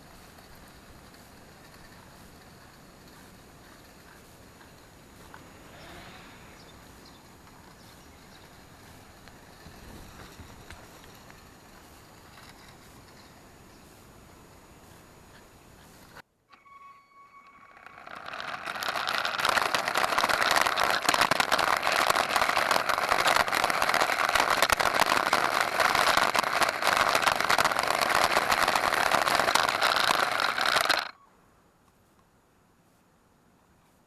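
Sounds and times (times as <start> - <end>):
toy car motor whirring: 0.0 - 13.4, 16.6 - 31.2.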